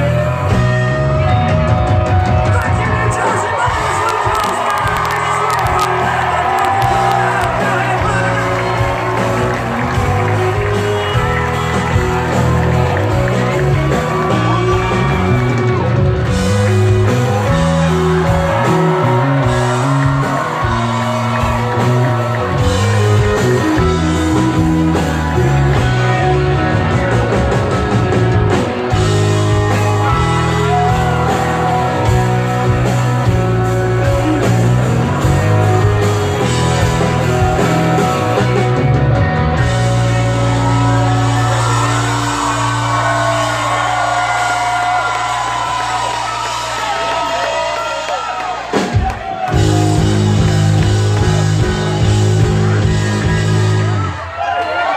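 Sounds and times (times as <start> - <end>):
electric guitar: 0.0 - 48.0, 48.6 - 54.8
bass and drums: 0.0 - 54.4.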